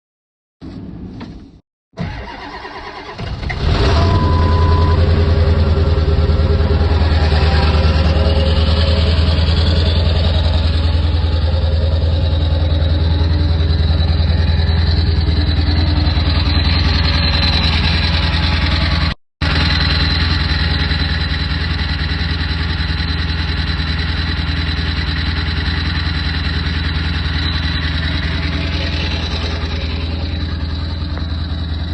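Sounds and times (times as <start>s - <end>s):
starter motor cranking: 2.0s - 4.0s
diesel engine idling loudly: 2.0s - 31.9s
short beep: 3.8s - 5.1s.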